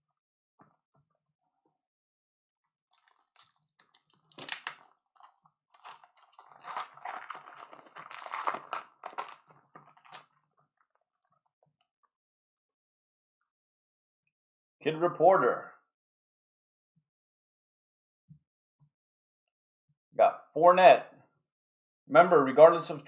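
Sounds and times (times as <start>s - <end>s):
wrappers crinkling and tearing: 2.9s - 10.4s.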